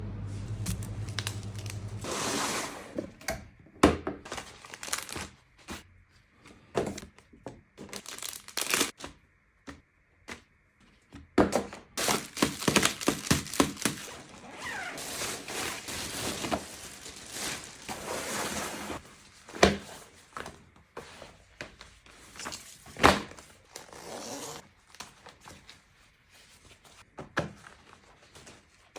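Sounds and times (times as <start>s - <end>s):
plastic and paper crinkling: 0.4s - 2.1s, 4.3s - 5.9s, 7.8s - 9.0s, 12.0s - 20.4s
packaging tearing: 0.6s - 2.4s, 4.3s - 5.3s, 7.9s - 8.9s, 12.0s - 19.0s.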